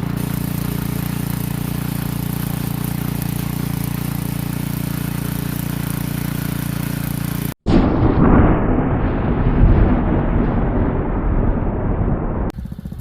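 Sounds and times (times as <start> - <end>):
rototiller engine running: 0.0 - 7.6, 12.6 - 13.0.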